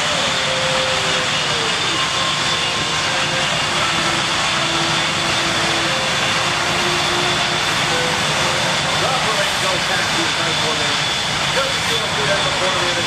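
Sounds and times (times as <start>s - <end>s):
jet engine rushing with whine: 0.0s - 13.0s.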